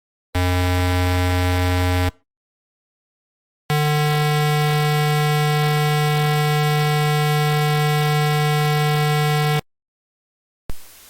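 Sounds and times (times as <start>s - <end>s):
harsh low alert buzzer: 0.3s - 2.2s, 3.7s - 9.7s.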